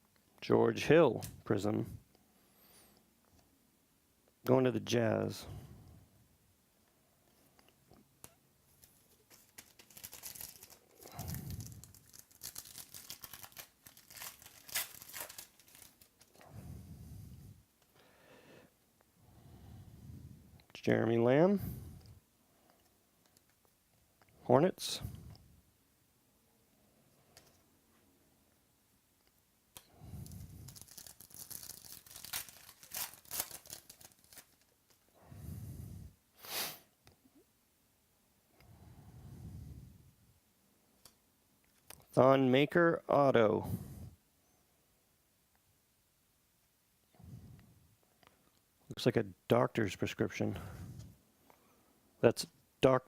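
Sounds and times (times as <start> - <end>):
cards and plastic rustling: 8.6 - 16.4, 30.0 - 35.1.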